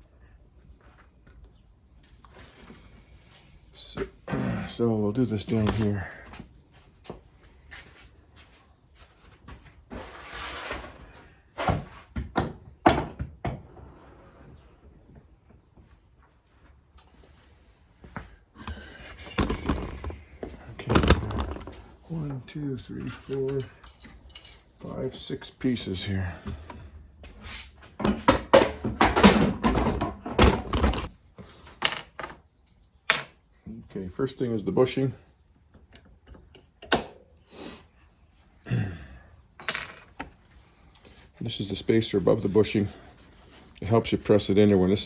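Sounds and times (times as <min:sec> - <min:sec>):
metal parts clinking and knocking: 0:23.4 - 0:24.8.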